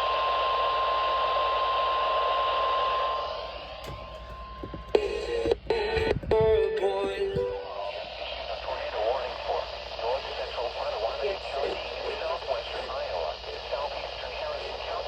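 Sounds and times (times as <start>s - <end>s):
steady alarm tone: 3.4s - 7.9s
radio static: 3.4s - 15.0s
person speaking over radio: 5.0s - 7.5s, 8.8s - 15.0s.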